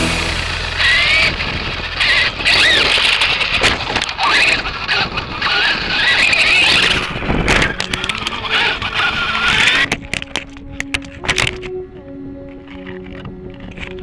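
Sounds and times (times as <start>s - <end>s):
electric motor whining: 0.0s - 10.2s
rough tyre and terrain noise: 0.0s - 11.7s.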